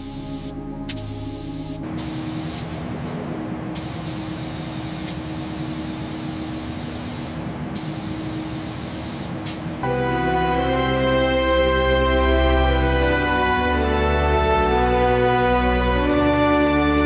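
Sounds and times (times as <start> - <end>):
paint spray gun hissing: 0.0 - 3.0, 3.8 - 9.8
low hum: 0.0 - 9.0.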